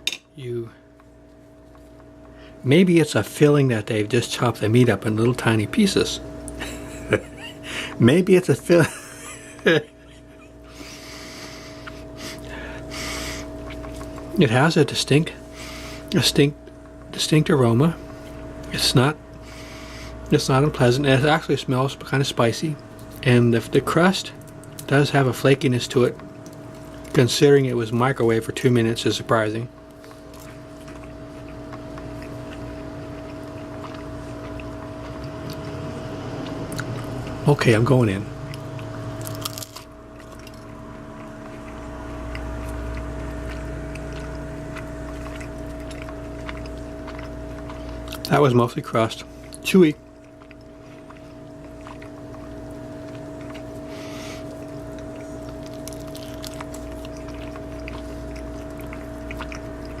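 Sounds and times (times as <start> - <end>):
steady machine hum: 0.0 - 60.0
person chewing food: 0.8 - 2.6, 10.2 - 14.4, 25.9 - 27.3, 29.7 - 37.4, 38.4 - 60.0.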